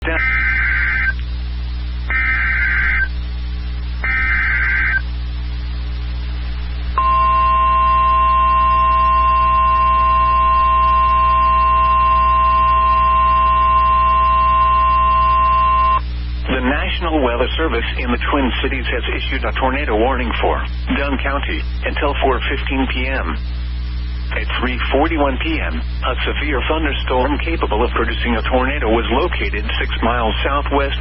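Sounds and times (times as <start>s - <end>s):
low electrical hum: 0.0s - 31.0s
screeching digital data bursts: 0.1s - 1.2s, 2.1s - 3.2s, 4.0s - 5.1s
steady alarm tone: 0.1s - 1.2s, 2.1s - 3.2s, 4.0s - 5.1s, 7.0s - 16.0s.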